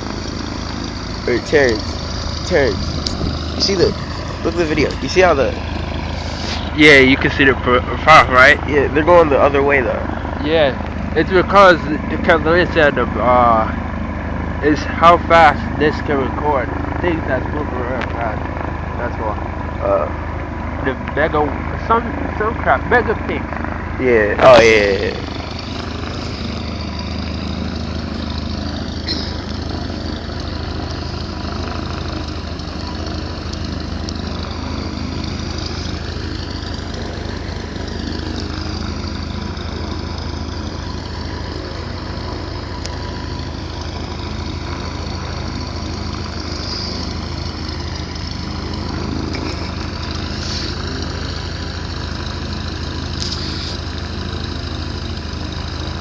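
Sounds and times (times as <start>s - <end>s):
engine droning steadily: 0.0s - 56.0s.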